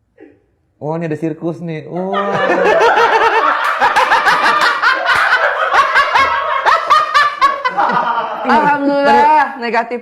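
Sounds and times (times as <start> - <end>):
people laughing loudly: 2.0 - 9.4.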